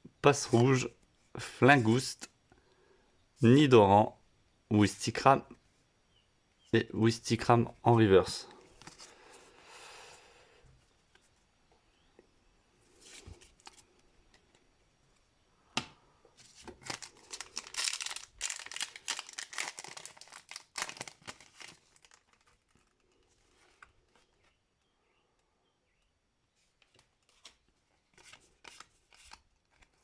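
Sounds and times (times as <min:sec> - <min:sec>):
foil wrapper tearing and crinkling: 0:16.8 - 0:23.4.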